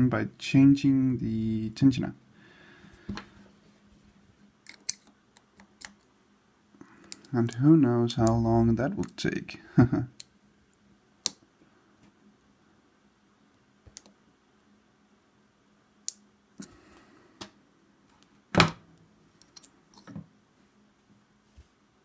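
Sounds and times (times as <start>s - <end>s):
lock picking clicks: 4.6s - 6.0s.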